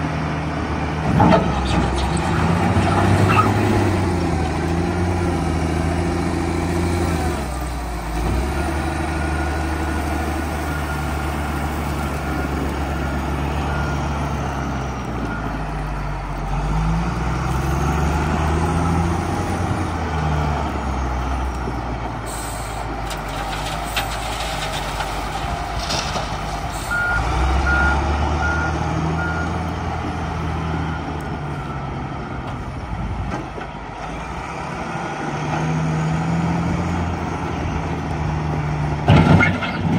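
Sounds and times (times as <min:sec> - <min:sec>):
diesel engine revving: 0:00.0 - 0:39.9
reversing alarm beeping: 0:26.8 - 0:29.6.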